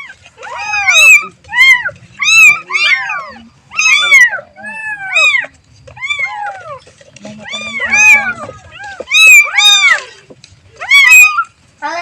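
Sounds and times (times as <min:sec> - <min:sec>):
kitten meowing: 0:00.0 - 0:10.1, 0:10.7 - 0:11.5.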